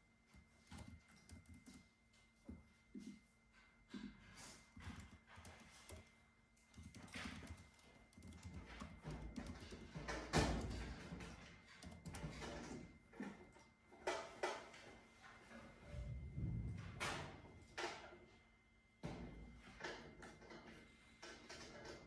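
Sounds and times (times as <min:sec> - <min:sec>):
keyboard typing: 0:00.6 - 0:01.8, 0:04.8 - 0:10.7.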